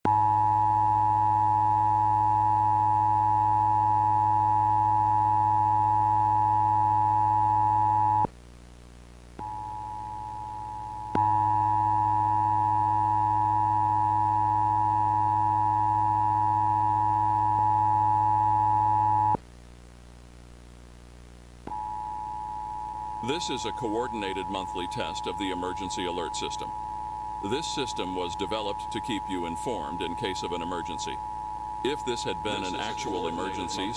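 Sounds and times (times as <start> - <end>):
quieter single steady tone: 9.4 - 19.4, 21.7 - 33.9
low buzz: 21.6 - 33.9
harsh two-pitch electronic tone: 21.7 - 33.9.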